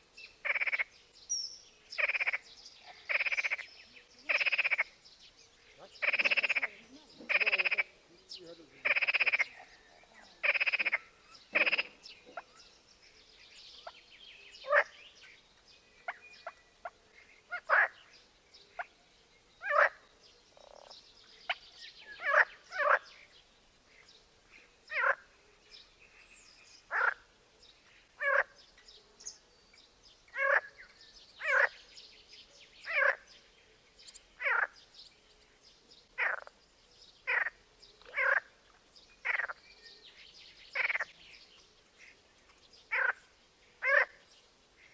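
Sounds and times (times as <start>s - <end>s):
frogs croaking: 0.4s - 0.9s, 2.0s - 5.0s, 5.6s - 12.6s, 14.6s - 15.4s, 16.0s - 18.1s, 19.6s - 23.3s, 23.9s - 25.4s, 26.8s - 28.7s, 30.3s - 31.9s, 32.8s - 33.5s, 34.1s - 34.8s, 36.2s - 36.6s, 37.2s - 39.6s, 40.7s - 41.2s, 42.9s - 44.3s.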